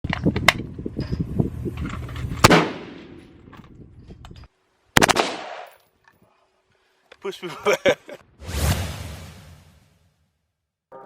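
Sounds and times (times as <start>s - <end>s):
rapid gunfire cracks: 5.0s - 5.6s.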